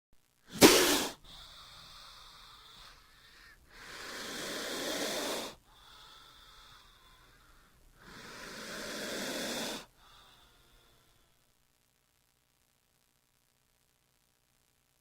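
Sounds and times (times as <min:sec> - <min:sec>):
snake hissing: 0:00.5 - 0:11.0.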